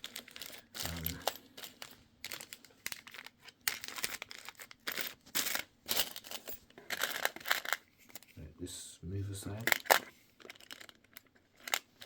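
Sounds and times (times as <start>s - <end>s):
wrapping material crinkling: 0.0s - 8.4s.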